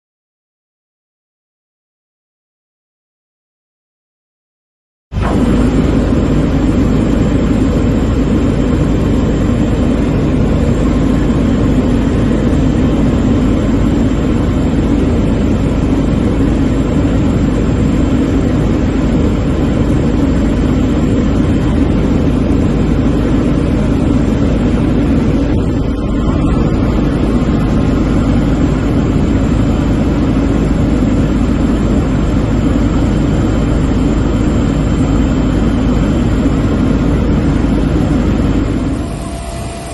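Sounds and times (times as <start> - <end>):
aircraft engine drone in cabin: 5.1 - 39.9.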